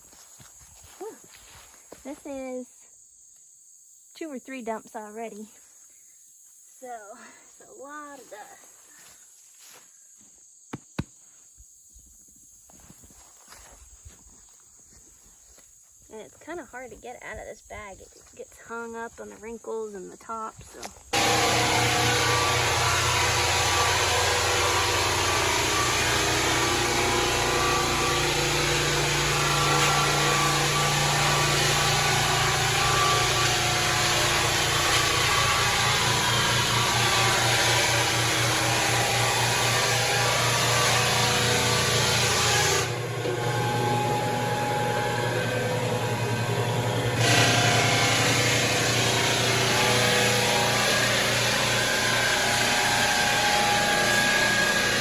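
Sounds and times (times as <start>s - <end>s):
sanding hiss: 21.2s - 43.0s
floor sander machine hum: 21.2s - 55.0s.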